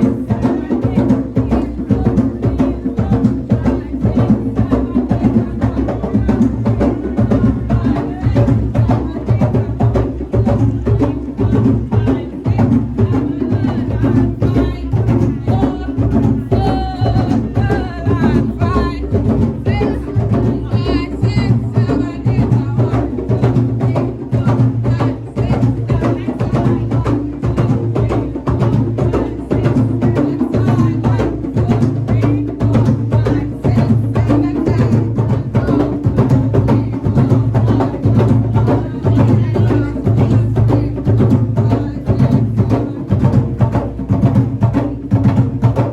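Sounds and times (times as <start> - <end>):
drums: 22.3 - 45.9.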